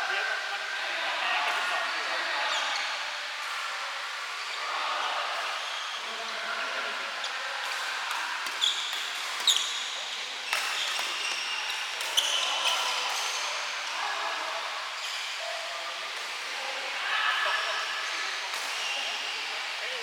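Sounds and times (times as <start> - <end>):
shoes squeaking on court: 8.6 - 9.9, 10.5 - 12.8.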